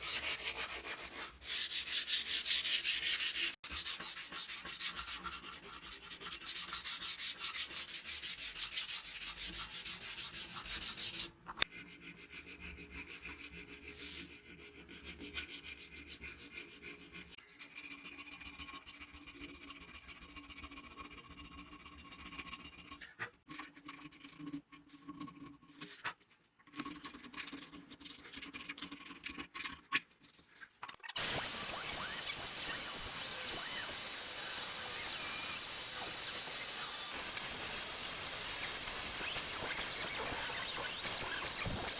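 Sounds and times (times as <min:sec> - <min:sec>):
abrasive rubbing on a hatchet: 0:31.2 - 0:41.9.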